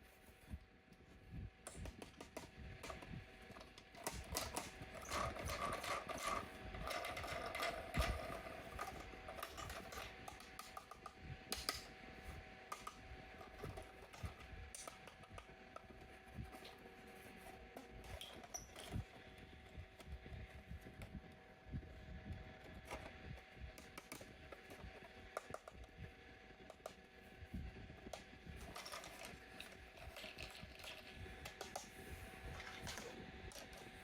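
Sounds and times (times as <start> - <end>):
light clicks and taps: 23.7 - 27.0.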